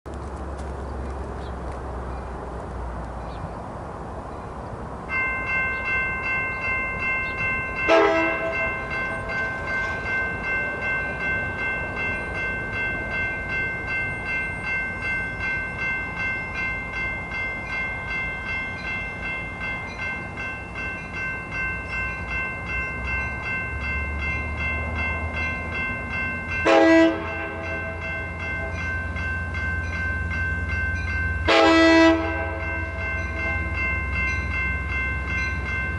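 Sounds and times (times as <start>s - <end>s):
train rumble: 0.1s - 35.9s
train bell ringing: 4.3s - 35.9s
train horn blasts: 7.9s - 8.8s, 26.6s - 28.0s, 31.4s - 33.0s.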